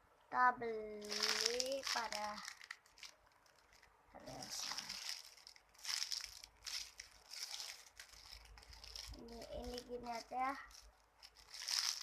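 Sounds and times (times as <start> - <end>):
squishy toys rustling and crinkling: 0.6 - 12.0.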